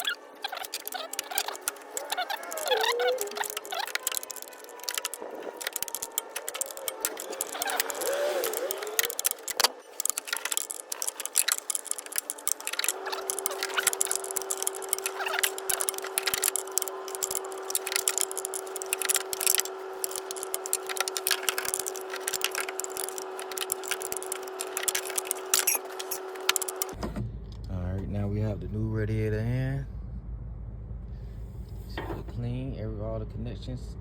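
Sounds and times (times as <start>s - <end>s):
ratchet and metal tool clicks: 0.0s - 27.0s.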